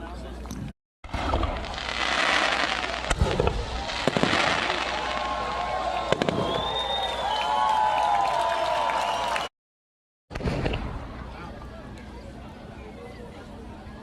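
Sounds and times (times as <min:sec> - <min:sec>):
firework bangs: 0:01.1 - 0:07.1
crackling hiss of fireworks: 0:01.1 - 0:07.4.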